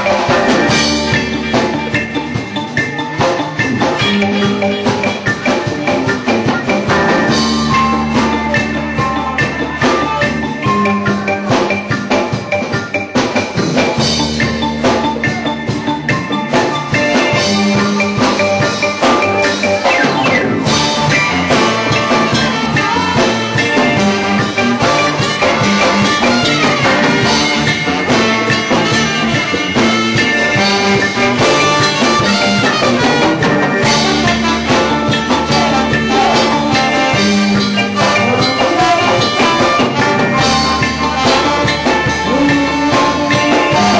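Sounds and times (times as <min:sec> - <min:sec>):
live reggae band playing: 0:00.0 - 0:43.9
repeating bass line: 0:00.0 - 0:43.9.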